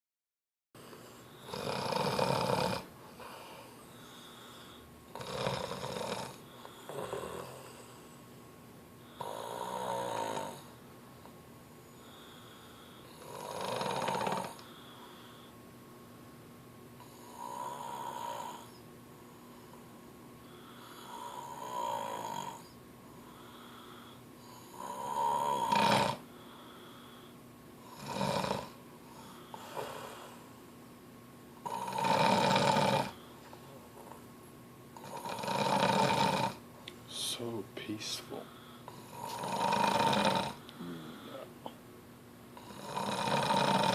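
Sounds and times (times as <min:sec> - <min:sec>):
woman snoring: 0:01.3 - 0:07.9, 0:09.1 - 0:10.7, 0:12.0 - 0:15.5, 0:17.0 - 0:18.8, 0:20.6 - 0:26.2, 0:27.8 - 0:30.3, 0:31.6 - 0:33.2, 0:35.0 - 0:36.6, 0:38.9 - 0:41.5, 0:42.6 - 0:43.9.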